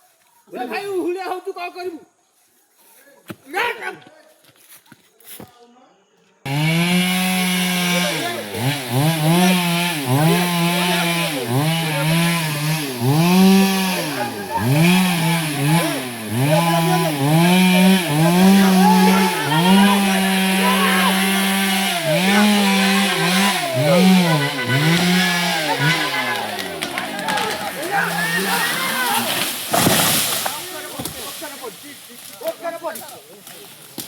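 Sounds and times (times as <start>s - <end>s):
chainsaw revving: 6.5s - 32.4s.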